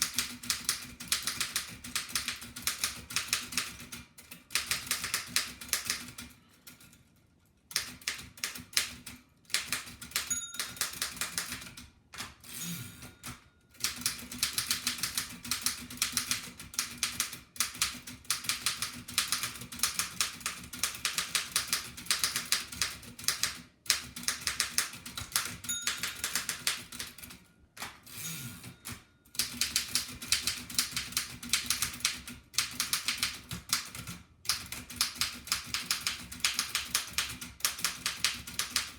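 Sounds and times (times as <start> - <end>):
typewriter keystroke clacks: 0.0 - 6.8, 7.7 - 12.5, 13.2 - 28.1, 28.8 - 38.9
typewriter margin bell: 9.6 - 11.8, 12.4 - 38.9.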